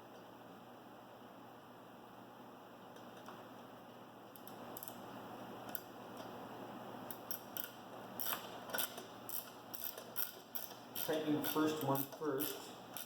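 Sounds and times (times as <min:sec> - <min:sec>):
ratchet wrench clicking: 0:07.1 - 0:13.0.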